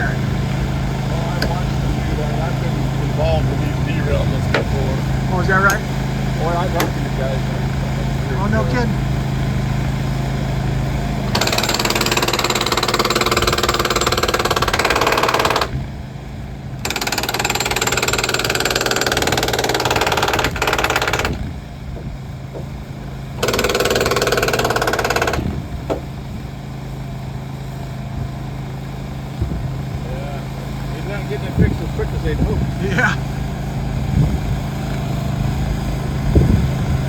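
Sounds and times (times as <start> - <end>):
engine running steadily: 0.0 - 37.0
rapid loud hammering: 11.3 - 15.8, 16.8 - 26.2.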